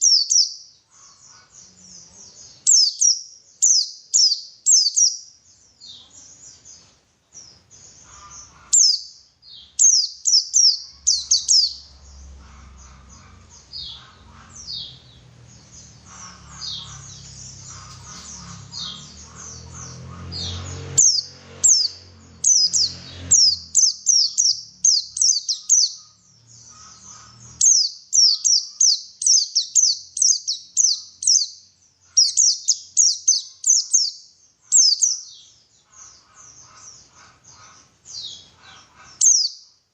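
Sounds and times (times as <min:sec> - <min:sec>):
bird chirping song: 0:00.0 - 0:39.9.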